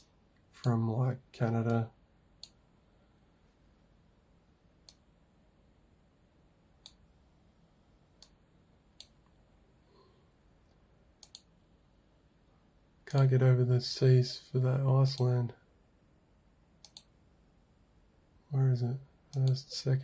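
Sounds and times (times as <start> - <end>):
computer mouse clicking: 4.8 - 5.0, 9.0 - 9.2, 11.2 - 11.5, 16.8 - 17.1.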